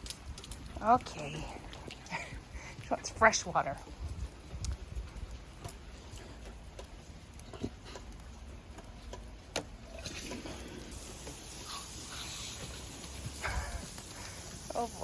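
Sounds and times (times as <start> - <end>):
light taps and drips: 0.0 - 11.6
sprinkler water spray hissing: 10.6 - 15.0.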